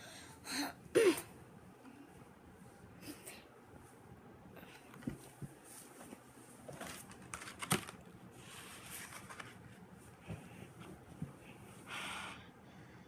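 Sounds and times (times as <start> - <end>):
soft rustling: 5.0 - 7.2.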